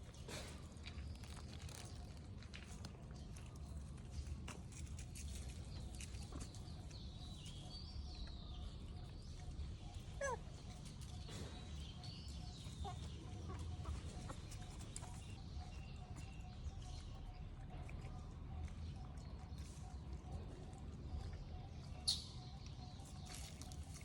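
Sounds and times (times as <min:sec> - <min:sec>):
animal and bird calls: 0:05.2 - 0:24.0.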